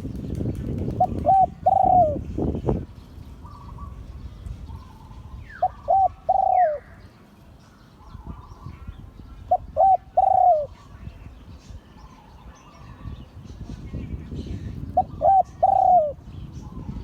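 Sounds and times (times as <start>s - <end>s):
dove cooing: 1.0s - 2.5s, 4.8s - 7.0s, 9.4s - 11.0s, 14.8s - 16.2s.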